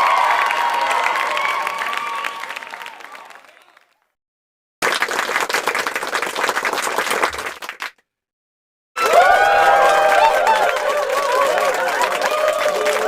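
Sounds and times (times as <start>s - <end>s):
crowd cheering and applause: 0.0s - 4.0s, 9.0s - 13.0s
crowd clapping: 0.0s - 4.2s, 4.8s - 8.0s, 9.0s - 13.0s.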